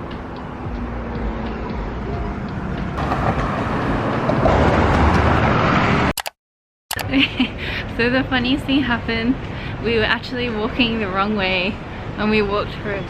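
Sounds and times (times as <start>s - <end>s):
vehicle passing close by: 0.0s - 6.1s.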